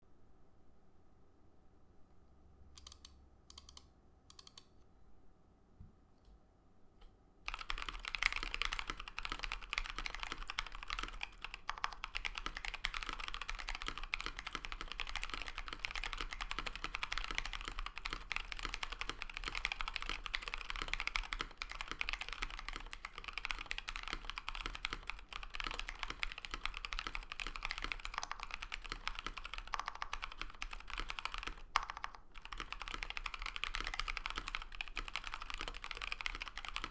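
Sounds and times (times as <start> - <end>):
fast mechanical keyboard typing: 7.5 - 36.9.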